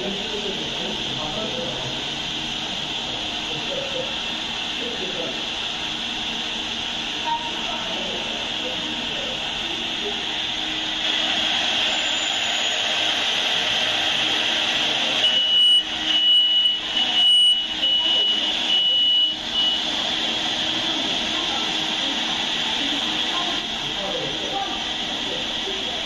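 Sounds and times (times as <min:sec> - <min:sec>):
short high beeps: 0:15.2 - 0:19.9.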